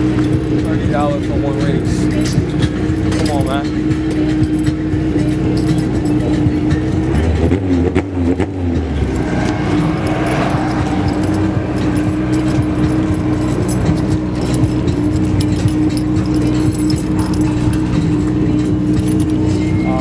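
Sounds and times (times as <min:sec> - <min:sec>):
car engines droning: 0:00.0 - 0:20.0.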